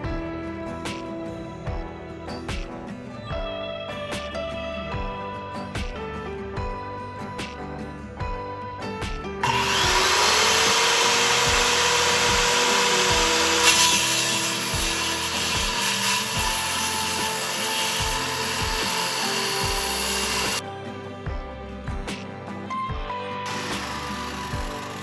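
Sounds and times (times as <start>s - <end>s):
background music with beat: 0.0s - 25.0s
power saw cutting wood: 9.4s - 20.6s, 23.5s - 25.0s.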